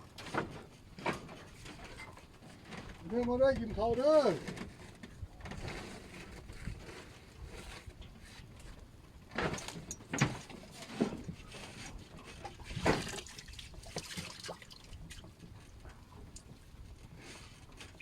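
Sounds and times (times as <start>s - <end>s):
water sloshing and splashing: 9.3s - 18.0s.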